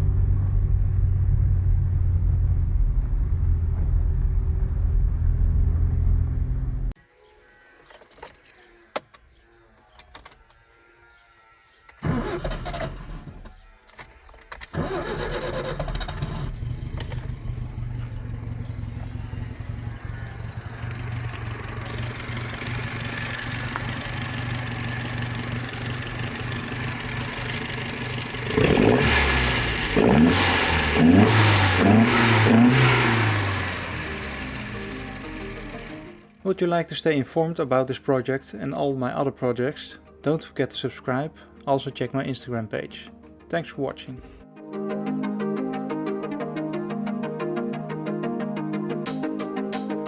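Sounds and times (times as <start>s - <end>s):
car engine running and revving: 0.0s - 7.0s, 14.8s - 36.3s.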